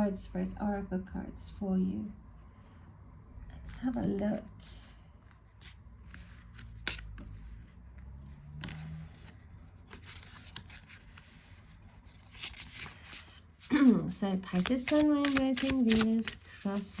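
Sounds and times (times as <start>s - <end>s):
cards shuffling and riffling: 5.3s - 7.5s, 8.5s - 17.0s
card snaps: 14.5s - 16.9s.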